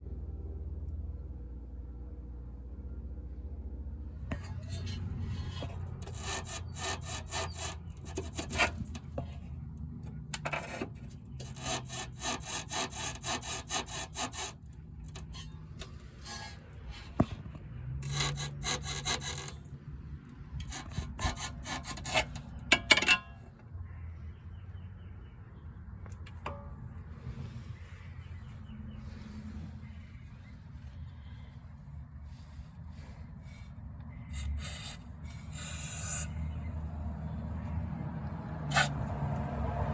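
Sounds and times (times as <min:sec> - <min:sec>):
low steady rumble: 0:00.0 - 0:11.4, 0:14.5 - 0:39.9
car suspension creaking: 0:04.2 - 0:23.6, 0:34.1 - 0:39.9.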